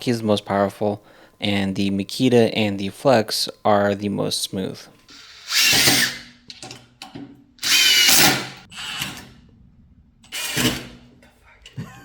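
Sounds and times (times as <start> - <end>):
impact driver whirring and hammering: 5.1 - 6.4, 7.6 - 9.2, 10.3 - 11.0.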